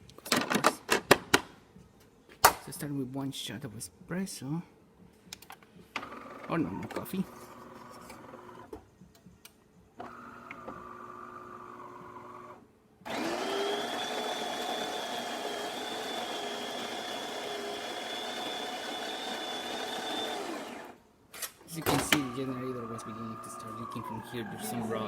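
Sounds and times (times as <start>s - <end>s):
coffee grinder whining: 6.0s - 8.7s, 10.1s - 21.0s, 22.1s - 25.0s
espresso machine motor running: 10.1s - 21.0s.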